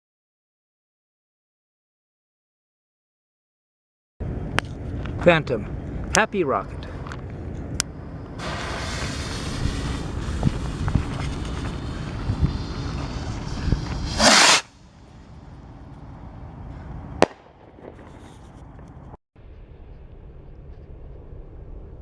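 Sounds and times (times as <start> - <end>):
sharp crack: 8.4 - 14.8, 17.2 - 18.4
firework rocket hissing: 8.4 - 14.9
loud short whoosh: 12.3 - 14.8.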